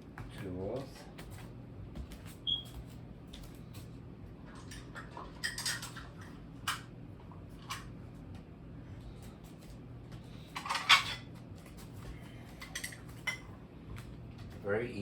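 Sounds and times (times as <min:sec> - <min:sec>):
kitchen items clattering: 0:04.5 - 0:06.4, 0:10.5 - 0:11.3.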